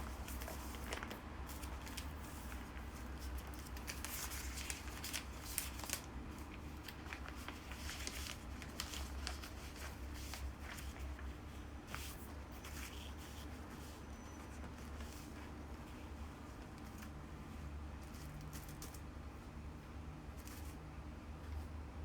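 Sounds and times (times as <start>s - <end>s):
rustling and crinkling: 0.0s - 17.4s.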